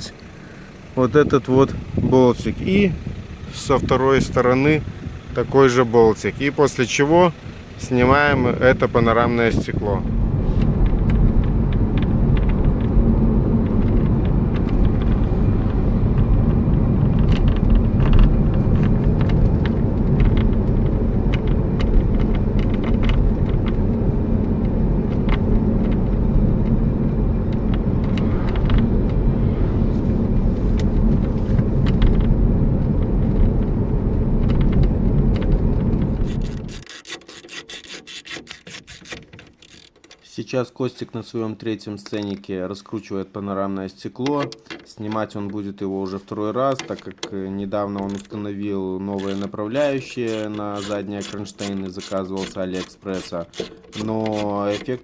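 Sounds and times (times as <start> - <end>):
car cabin road rumble: 0.0 - 36.8, 45.1 - 54.4.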